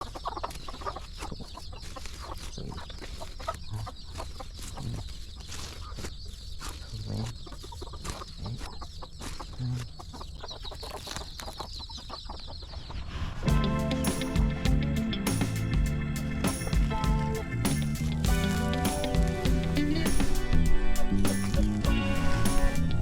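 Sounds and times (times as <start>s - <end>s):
clicks and scratches: 0.0s - 11.8s
chickens clucking: 0.0s - 23.0s.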